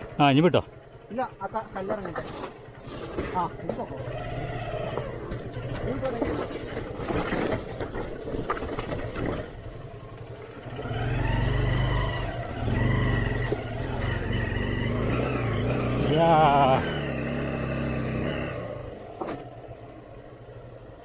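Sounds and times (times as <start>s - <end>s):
motorcycle engine at low revs: 0.0s - 21.0s.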